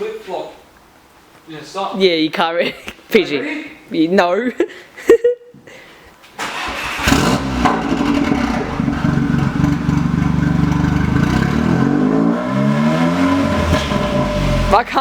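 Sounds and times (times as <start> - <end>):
engine revving: 6.4 - 14.9
car engine starting and idling: 6.4 - 15.0.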